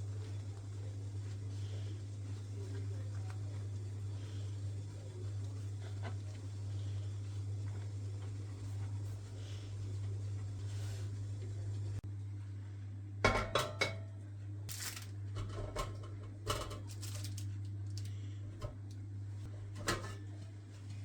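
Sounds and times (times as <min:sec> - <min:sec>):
dishes and cutlery clinking: 0:13.3 - 0:14.1, 0:19.8 - 0:20.4.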